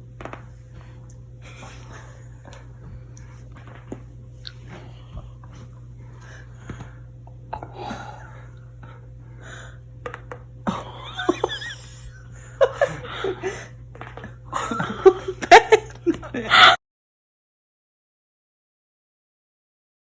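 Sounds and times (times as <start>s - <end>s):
laughter: 10.7s - 13.7s, 14.5s - 16.8s.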